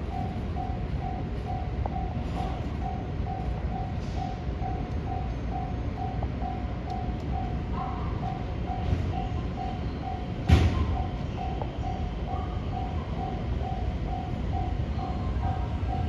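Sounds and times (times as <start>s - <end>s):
level-crossing warning bell: 0.0s - 16.0s.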